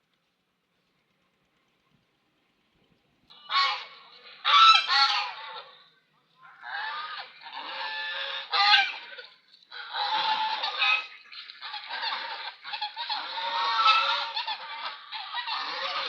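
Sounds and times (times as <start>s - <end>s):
swans honking: 3.3s - 16.0s.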